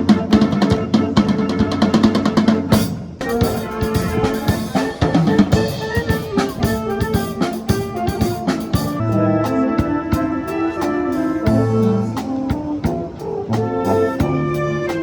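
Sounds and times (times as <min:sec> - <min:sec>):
bass drum and snare beat: 0:00.0 - 0:10.2.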